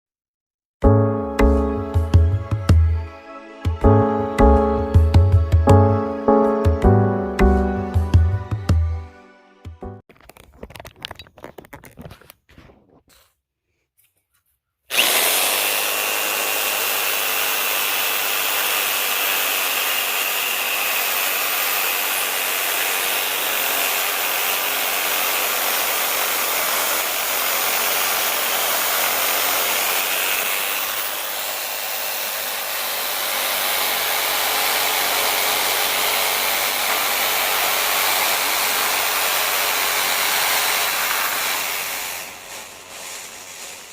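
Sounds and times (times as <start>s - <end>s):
music: 0.8s - 10.0s
reciprocating saw cutting wood: 14.9s - 43.9s.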